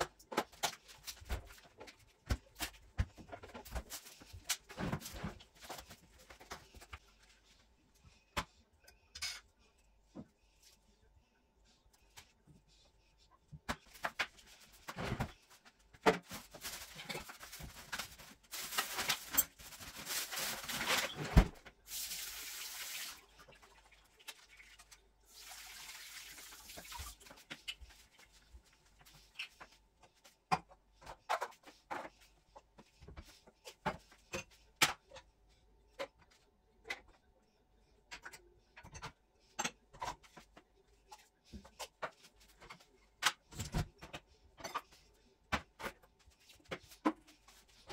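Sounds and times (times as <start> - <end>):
kitchen tap running: 21.9 - 23.3, 25.3 - 27.3.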